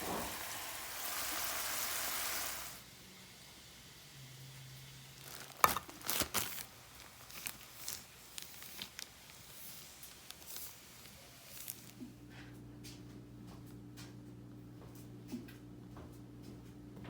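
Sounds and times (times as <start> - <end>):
crinkling and rustling: 5.1 - 12.2.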